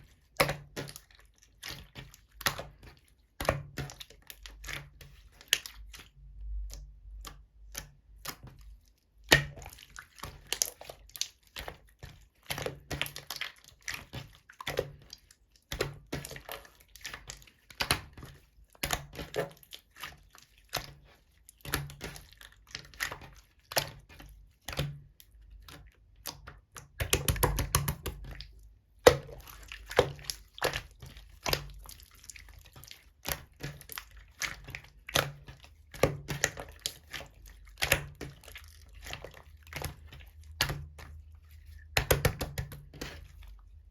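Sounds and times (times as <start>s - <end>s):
slime squishing and popping: 9.2s - 41.2s, 41.9s - 43.3s.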